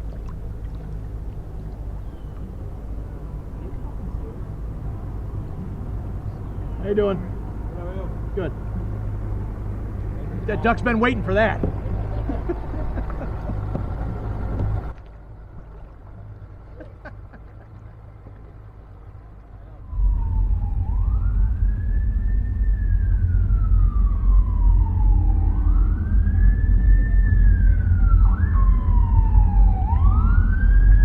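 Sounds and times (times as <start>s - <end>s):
loud low rumble: 19.0s - 31.0s
emergency siren wailing: 19.7s - 31.0s
siren yelp: 19.8s - 31.0s.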